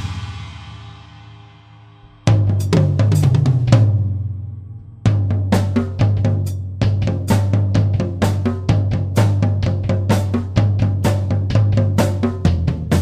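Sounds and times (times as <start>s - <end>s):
cymbals: 0.0s - 3.4s
bass drum: 0.0s - 13.0s
drum kit playing: 0.0s - 13.0s.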